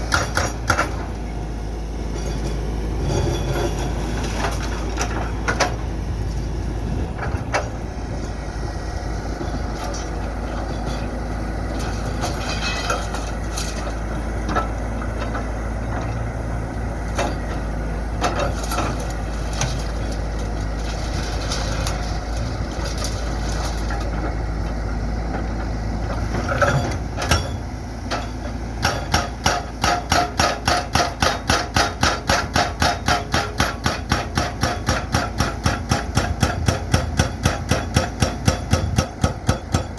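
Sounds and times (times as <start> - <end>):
hydraulic breaker hammering concrete: 0.0 - 1.1, 28.8 - 39.9
excavator engine running: 0.0 - 39.9
metal and concrete clanking: 2.1 - 5.8, 9.4 - 16.2.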